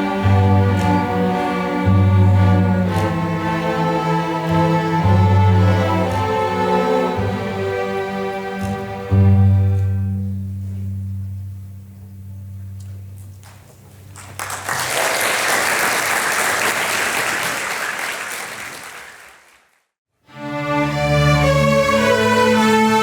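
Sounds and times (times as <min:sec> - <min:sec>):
audience applauding: 0:13.4 - 0:19.8.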